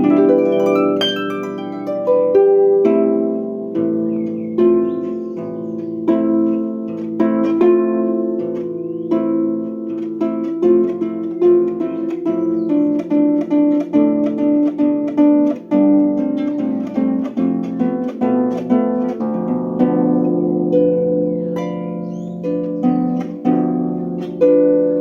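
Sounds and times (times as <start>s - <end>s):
ringing instrumental notes: 0.0s - 9.8s.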